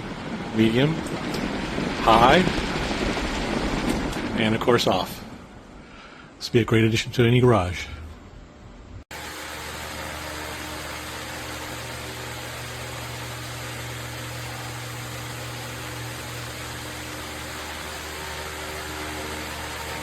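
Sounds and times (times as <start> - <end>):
fan air rushing: 0.0 - 6.6, 7.6 - 20.0
electric motor hum: 9.1 - 20.0.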